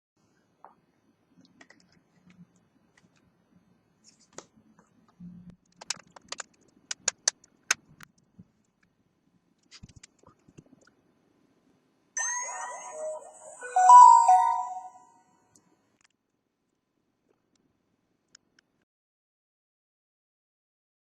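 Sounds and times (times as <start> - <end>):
sharp plastic clicks: 5.6 - 8.9.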